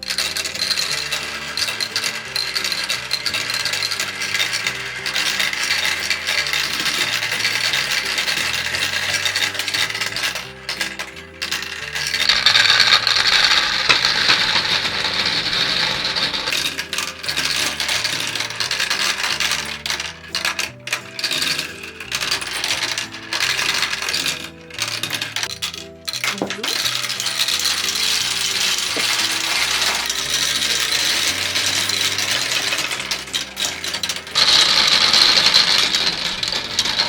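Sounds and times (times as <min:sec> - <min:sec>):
background music: 0:00.0 - 0:37.0
gumballs clattering down track: 0:00.0 - 0:37.0.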